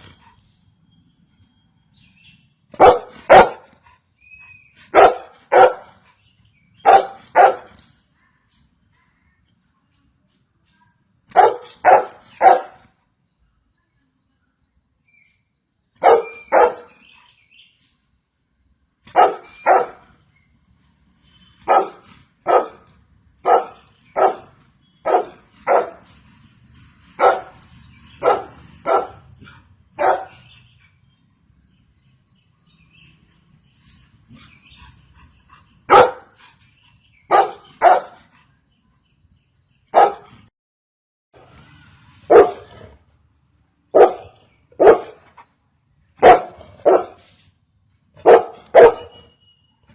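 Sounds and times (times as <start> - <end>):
dog barking: 2.8 - 3.7, 4.9 - 5.9, 6.8 - 7.8, 11.3 - 12.8, 16.0 - 17.1, 19.1 - 20.0, 21.6 - 22.8, 23.4 - 26.0, 27.2 - 27.6, 28.2 - 29.3, 30.0 - 30.5, 35.9 - 36.4, 37.3 - 38.2, 39.9 - 40.4, 42.3 - 42.8, 43.9 - 45.3, 46.2 - 47.2, 48.2 - 49.3.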